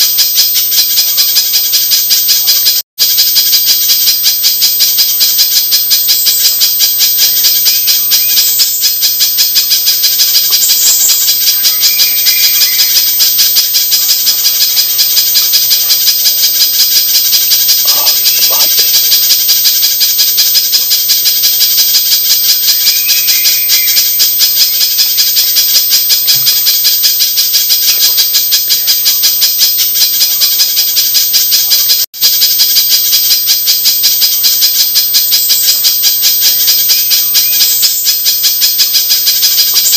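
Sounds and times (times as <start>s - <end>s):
bird high chattering calls: 6.1s - 28.9s, 35.4s - 39.9s.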